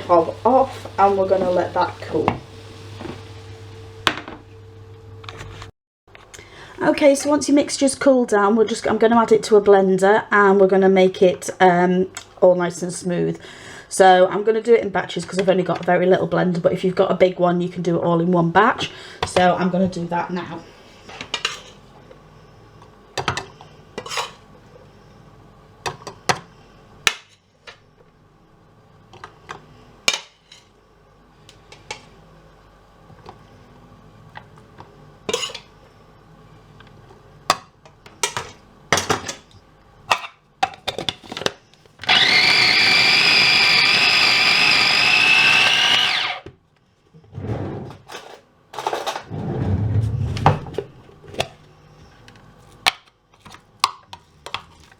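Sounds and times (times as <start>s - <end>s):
electric blender motor running: 42.0s - 46.5s.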